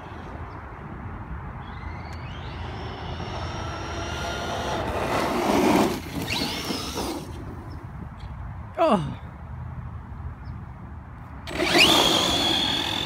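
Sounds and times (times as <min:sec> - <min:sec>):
electric motor whining: 0:01.7 - 0:07.3, 0:11.5 - 0:13.0.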